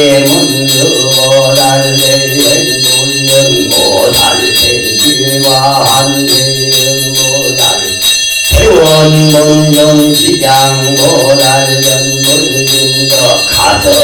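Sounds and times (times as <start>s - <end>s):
hand bell ringing: 0.0s - 14.0s
monk chanting: 0.0s - 14.0s.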